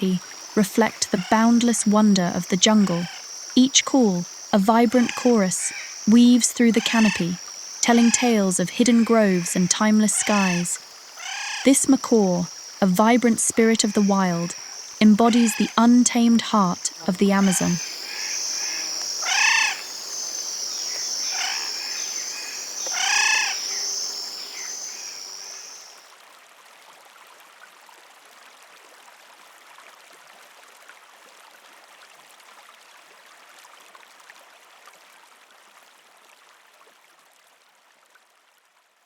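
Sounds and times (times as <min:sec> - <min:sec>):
harsh bird calls: 0:00.0 - 0:26.0
high-pitched insect trill: 0:00.0 - 0:26.0
faint forest ambience hiss: 0:00.0 - 0:39.0.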